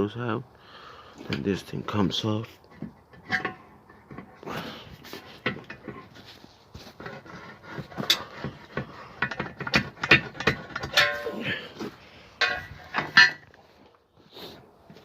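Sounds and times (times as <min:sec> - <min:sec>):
hand tools clicking and knocking: 0:02.7 - 0:04.4, 0:05.2 - 0:06.2, 0:06.9 - 0:13.6.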